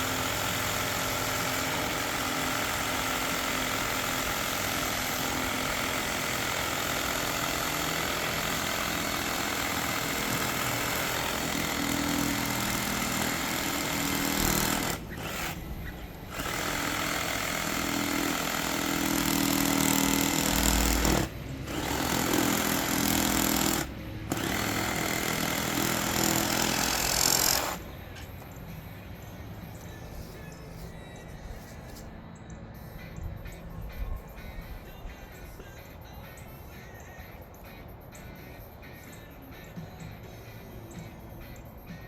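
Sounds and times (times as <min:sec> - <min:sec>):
reciprocating saw cutting pipe: 0:00.0 - 0:15.7, 0:16.3 - 0:27.8.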